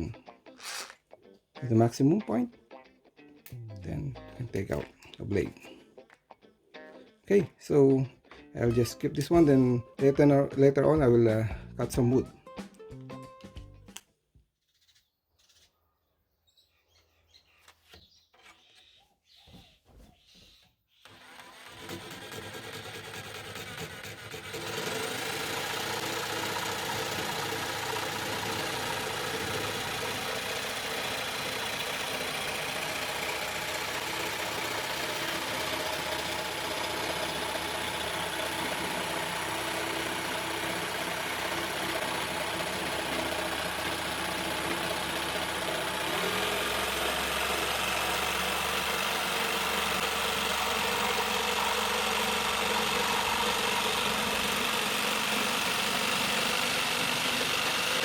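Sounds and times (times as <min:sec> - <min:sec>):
electric jigsaw running: 0:00.0 - 0:01.0, 0:21.0 - 0:58.0.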